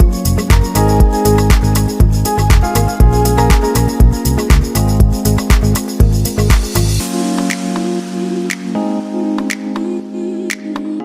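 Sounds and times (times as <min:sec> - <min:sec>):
heavy bass-drum beat: 0:00.0 - 0:07.0.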